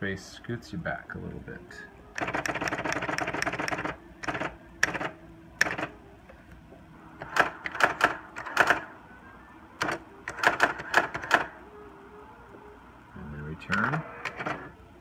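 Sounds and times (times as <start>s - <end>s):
electronic typewriter key strikes: 2.2s - 5.9s, 7.2s - 8.8s, 9.8s - 11.5s.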